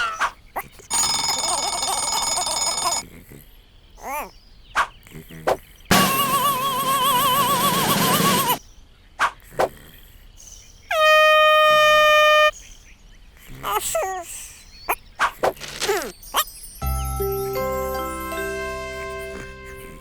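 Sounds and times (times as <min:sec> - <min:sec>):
squeaky chirps: 0:00.0 - 0:03.2, 0:04.0 - 0:09.7, 0:13.6 - 0:17.0
held music chord: 0:16.8 - 0:20.0.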